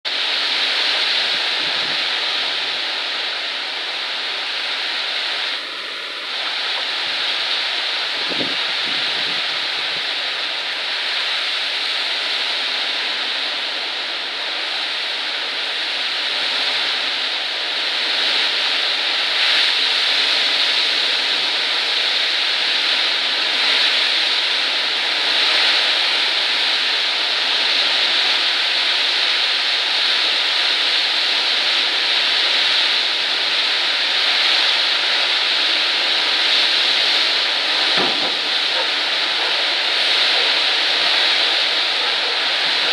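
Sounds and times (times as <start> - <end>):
high storm winds rushing: 0.1 - 13.7, 34.7 - 42.9.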